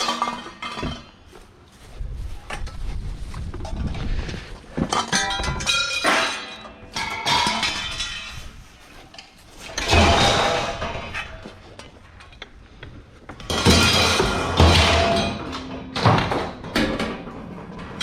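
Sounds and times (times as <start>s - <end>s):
scrap metal clanging: 0.0s - 1.4s, 4.1s - 12.0s, 13.4s - 16.1s.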